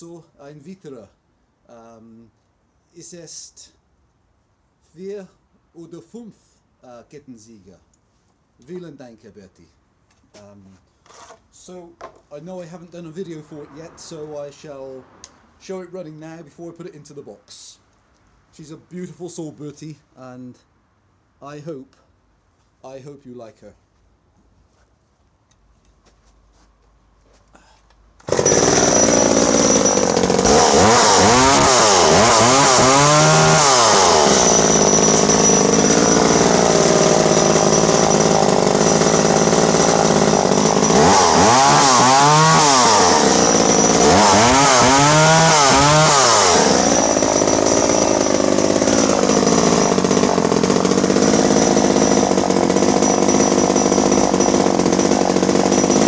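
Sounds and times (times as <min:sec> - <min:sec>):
chainsaw engine revving: 0:28.2 - 0:56.0.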